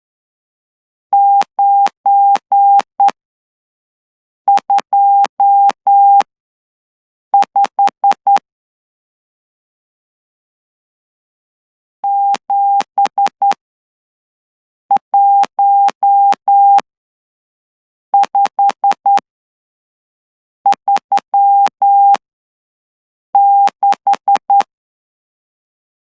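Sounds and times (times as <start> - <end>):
morse code beeps: 1.2 - 3.2, 4.5 - 6.3, 12.1 - 13.6, 14.9 - 16.8, 20.7 - 22.2, 23.4 - 24.7.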